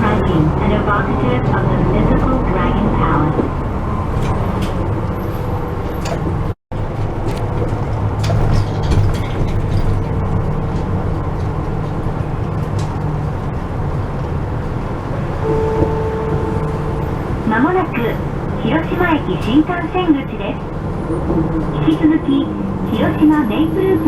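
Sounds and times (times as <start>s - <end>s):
bus engine and road rumble: 0.0s - 24.0s
steady tone: 15.4s - 19.4s.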